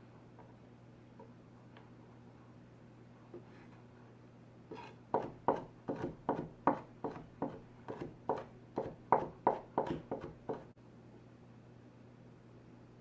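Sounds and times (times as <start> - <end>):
knife chopping on cutting board: 4.7 - 10.7.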